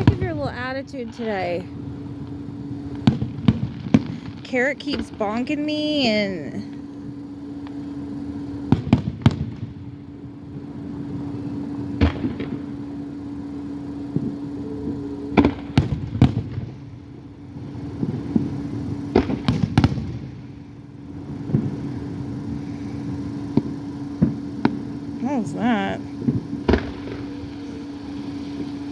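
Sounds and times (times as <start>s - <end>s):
fireworks bangs: 0.0s - 6.6s, 8.4s - 12.8s, 13.8s - 17.0s, 17.6s - 20.6s, 21.2s - 28.8s
steady low hum: 0.0s - 28.9s.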